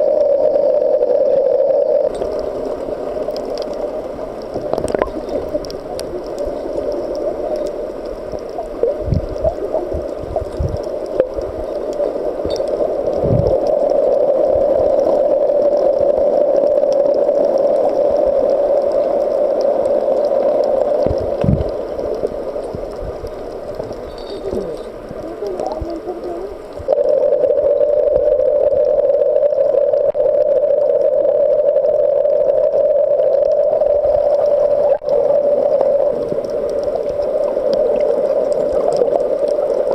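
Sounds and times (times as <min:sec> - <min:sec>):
underwater hum: 0:00.0 - 0:39.9
dull low thumps: 0:13.2 - 0:13.6.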